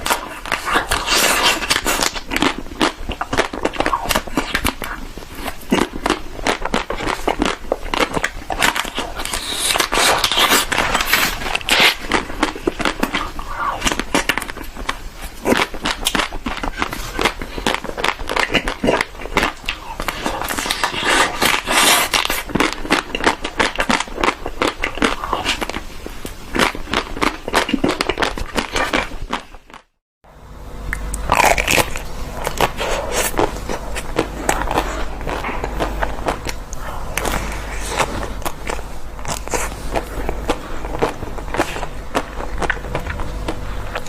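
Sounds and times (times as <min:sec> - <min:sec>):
person eating ice cream: 0:00.0 - 0:29.9, 0:31.0 - 0:44.0
wet mouth clicks and chewing: 0:00.0 - 0:29.9, 0:30.9 - 0:44.0
low hum: 0:30.3 - 0:44.0.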